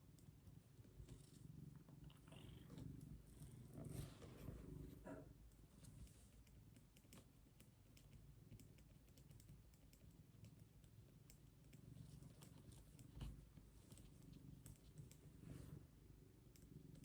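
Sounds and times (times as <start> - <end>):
faint keyboard typing: 5.4 - 15.4, 16.4 - 17.0.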